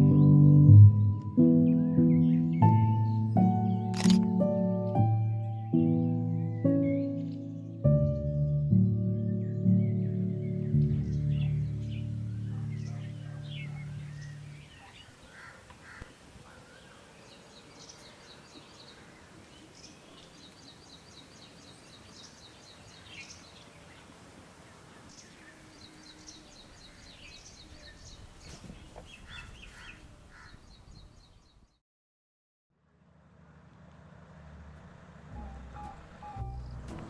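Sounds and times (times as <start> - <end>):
birds singing and calling: 9.4 - 31.8.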